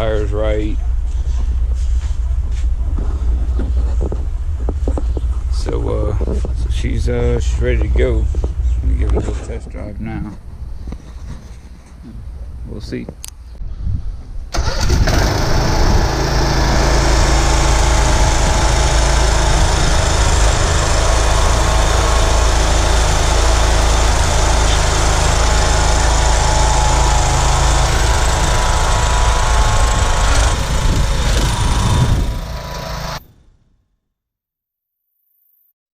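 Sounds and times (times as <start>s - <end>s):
small lawnmower engine running: 14.6s - 33.2s.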